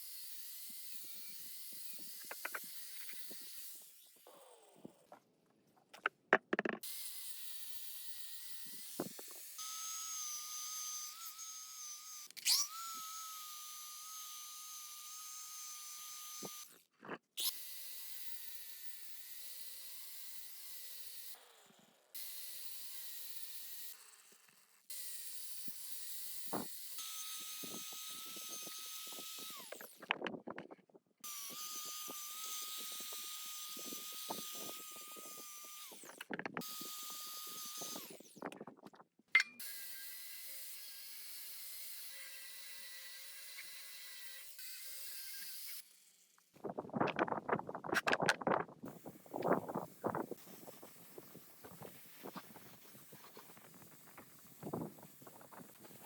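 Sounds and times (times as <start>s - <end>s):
handheld power tool whining: 0.0s - 5.3s, 5.9s - 56.0s
knocks and clicks: 5.9s - 6.8s.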